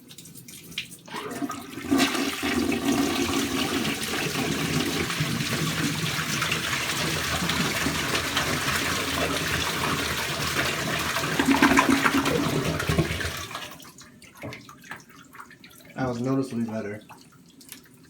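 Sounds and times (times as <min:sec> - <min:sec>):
toilet flush click: 0:01.1 - 0:13.8
toilet water rushing: 0:01.1 - 0:13.8.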